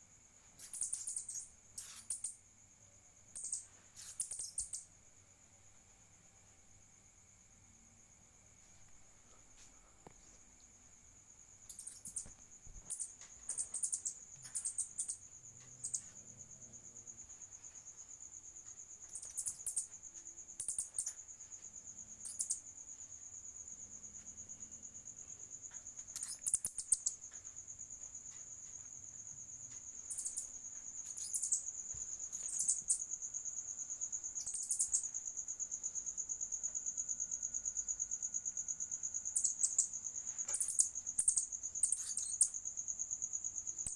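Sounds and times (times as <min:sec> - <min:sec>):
crickets trilling: 0:00.0 - 0:43.9
mouse squeaking: 0:00.6 - 0:02.4, 0:03.4 - 0:04.8, 0:11.7 - 0:15.2, 0:15.8 - 0:16.0, 0:19.1 - 0:19.9, 0:20.6 - 0:21.1, 0:22.3 - 0:22.6, 0:26.2 - 0:27.2, 0:30.1 - 0:31.6, 0:32.3 - 0:33.0, 0:34.4 - 0:35.0, 0:39.4 - 0:39.9, 0:40.5 - 0:42.5.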